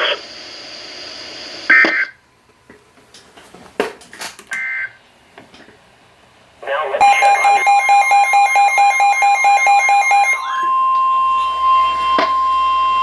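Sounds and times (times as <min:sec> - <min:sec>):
weather radio broadcast: 0:00.0 - 0:00.2, 0:06.6 - 0:08.3
radio hiss: 0:00.0 - 0:02.0, 0:06.6 - 0:07.6
warbling digital data tones: 0:07.0 - 0:13.0.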